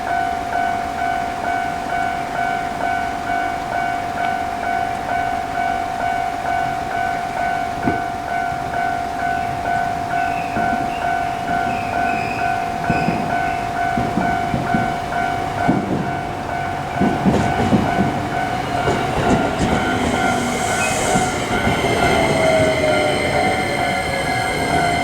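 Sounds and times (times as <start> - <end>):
train wheels clattering over rails: 10.5 - 25.0.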